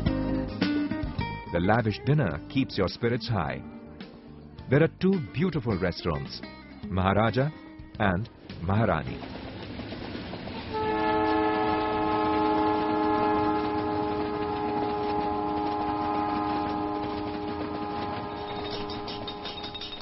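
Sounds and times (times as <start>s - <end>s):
train running noise: 8.3s - 20.0s
locomotive horn blast: 10.7s - 19.7s.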